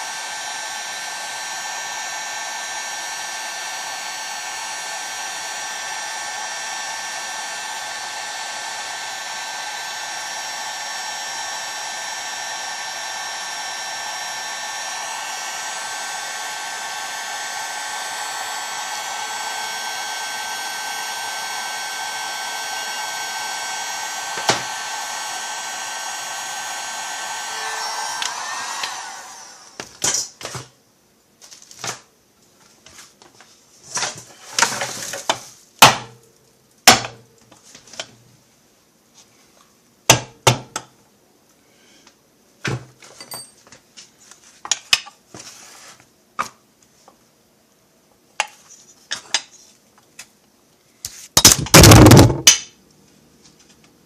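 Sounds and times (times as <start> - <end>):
heat gun blowing: 0.0 - 29.9, 51.4 - 52.7
metal tools clinking: 43.2 - 43.6.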